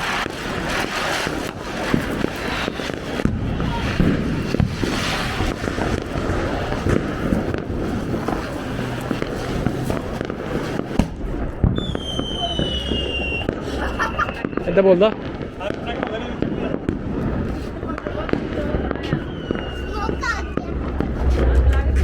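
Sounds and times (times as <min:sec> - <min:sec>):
fireworks popping and banging: 0:00.0 - 0:22.0.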